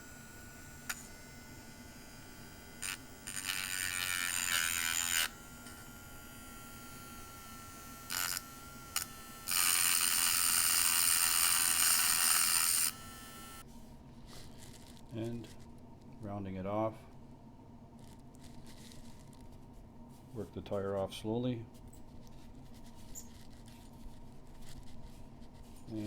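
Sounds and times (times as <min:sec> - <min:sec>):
rotary tool whining: 0:00.0 - 0:13.6
grinding stone on steel: 0:00.9 - 0:13.6.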